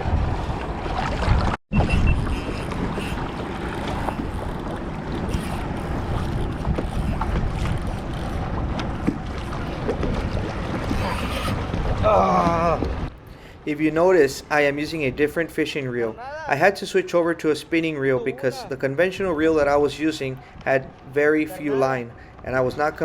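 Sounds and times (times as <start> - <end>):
wind on microphone: 0.0 - 13.2
water moving against kayak: 0.0 - 13.3.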